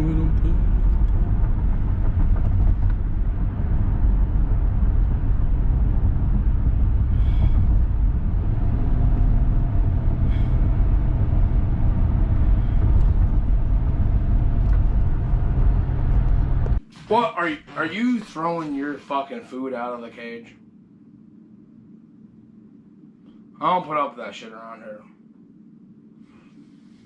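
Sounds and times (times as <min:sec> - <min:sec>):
vehicle engine rumbling: 0:00.0 - 0:17.9.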